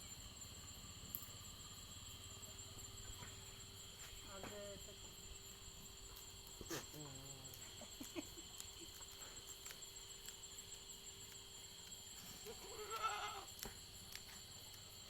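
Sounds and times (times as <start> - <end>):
goat bleating: 12.5 - 13.5.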